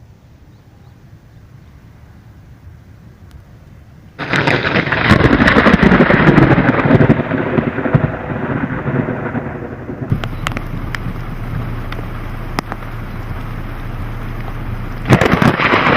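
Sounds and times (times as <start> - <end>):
thunderclap and rumble: 4.1 - 15.9
steady noise: 9.3 - 15.9.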